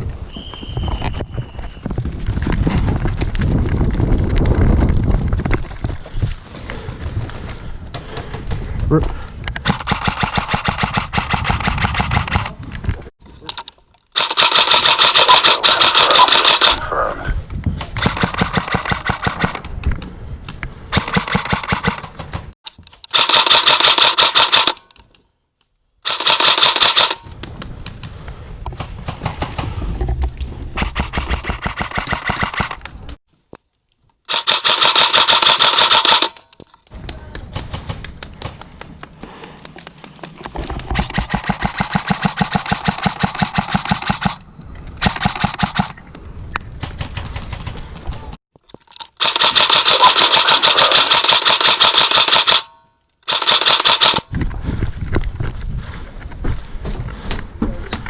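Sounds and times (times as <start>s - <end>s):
airsoft guns firing: 9.6s - 12.6s, 17.9s - 19.6s, 20.9s - 22.4s, 30.8s - 32.8s, 40.9s - 44.4s, 45.0s - 46.0s, 49.2s - 52.7s.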